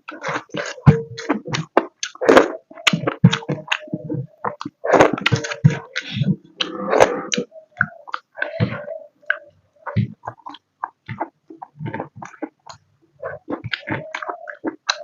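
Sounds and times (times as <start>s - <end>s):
chewing and mouth smacking: 7.3s - 15.0s.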